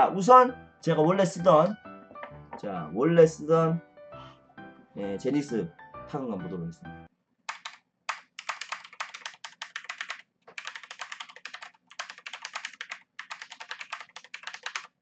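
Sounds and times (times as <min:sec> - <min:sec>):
clicky mechanical keyboard typing: 0:07.5 - 0:15.0.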